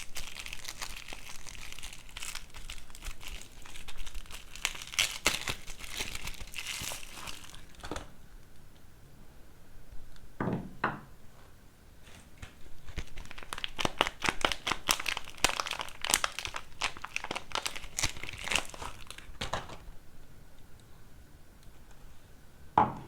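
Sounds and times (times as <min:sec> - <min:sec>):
wrapper crackling: 0:00.0 - 0:08.1, 0:12.4 - 0:19.8
wrapper rustling: 0:00.0 - 0:08.1, 0:12.0 - 0:19.8.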